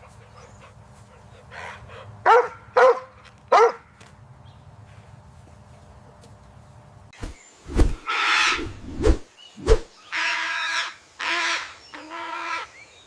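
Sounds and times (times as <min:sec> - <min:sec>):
bird harsh calls: 0:07.9 - 0:08.9.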